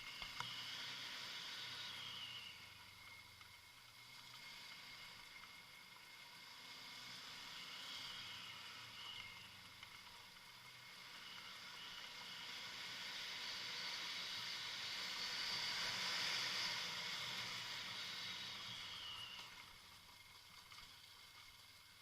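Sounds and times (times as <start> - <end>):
motorcycle passing by: 3.9 - 20.0.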